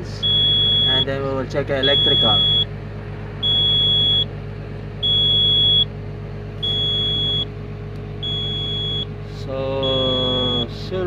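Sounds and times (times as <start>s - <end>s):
engine low hum: 0.0s - 11.0s
warning buzzer beeping: 0.2s - 1.2s, 1.8s - 2.7s, 3.4s - 4.3s, 5.0s - 5.9s, 6.6s - 7.5s, 8.2s - 9.1s, 9.8s - 10.6s.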